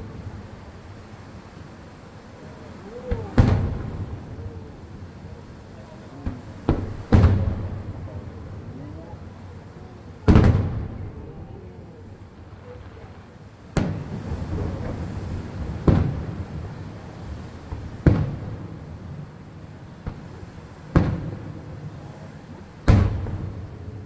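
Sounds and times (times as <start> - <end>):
firework shells bursting: 3.1 - 5.6, 6.2 - 8.7, 22.8 - 24.0.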